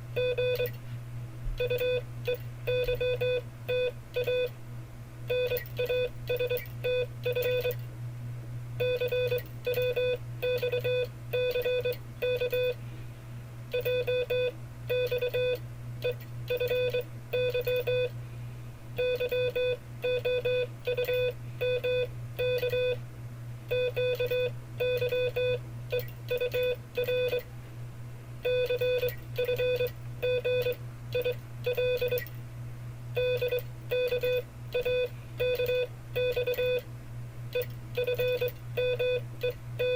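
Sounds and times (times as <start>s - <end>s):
steady low hum: 0.0s - 39.9s
morse code beeps: 0.2s - 0.7s, 1.6s - 4.5s, 5.3s - 7.8s, 8.8s - 12.8s, 13.8s - 18.1s, 19.0s - 23.0s, 23.7s - 27.4s, 28.5s - 32.2s, 33.2s - 36.8s, 37.6s - 39.9s.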